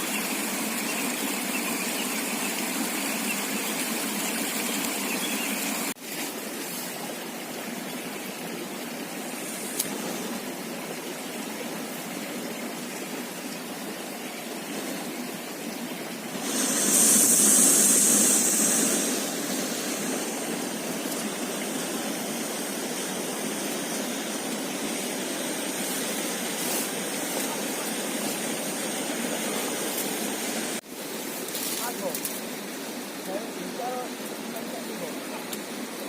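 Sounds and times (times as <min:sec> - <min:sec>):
river water flowing: 0:00.0 - 0:36.0
hissing rush: 0:16.2 - 0:30.8.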